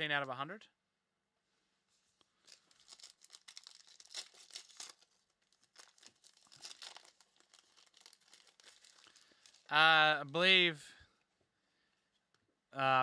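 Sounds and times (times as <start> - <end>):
foil wrapper tearing: 2.3 - 9.7.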